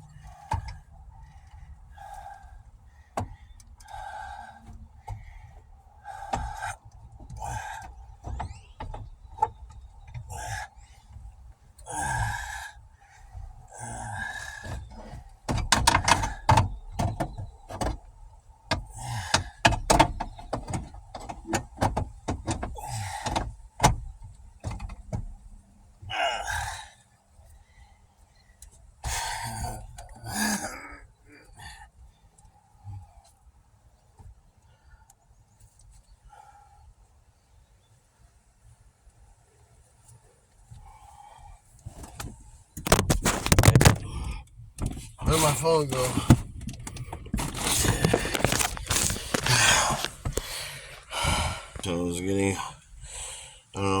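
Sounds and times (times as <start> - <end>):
knocks and clicks in car interior: 0.4 - 2.4, 3.0 - 11.3, 13.4 - 26.1, 41.8 - 52.8
scraping and rustling: 41.8 - 44.1, 44.8 - 51.9.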